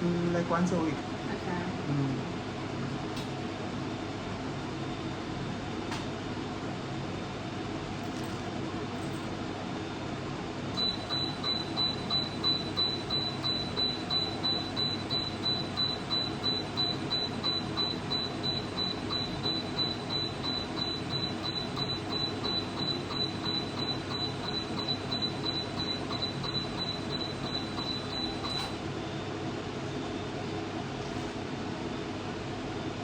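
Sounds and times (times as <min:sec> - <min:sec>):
machine humming: 0:10.7 - 0:29.2
rapid short high beeps: 0:10.8 - 0:28.7.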